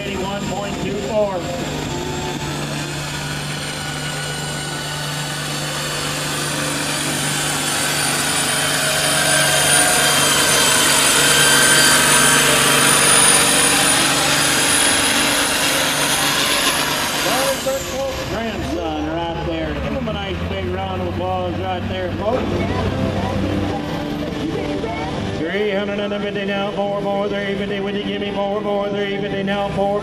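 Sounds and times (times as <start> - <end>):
thin high whine: 0.0 - 18.4
tractor engine running: 0.0 - 30.0.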